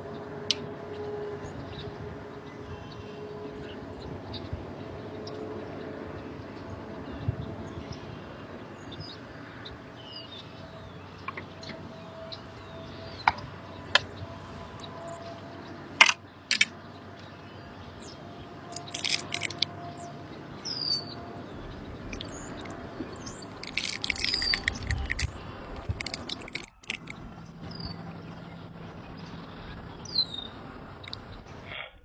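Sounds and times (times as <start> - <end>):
birds calling: 0.0 - 31.9
sharp clicks: 16.0 - 16.7, 18.7 - 19.7, 22.1 - 22.8, 23.6 - 27.2
rapid clicking bursts: 18.7 - 19.7, 22.1 - 27.3.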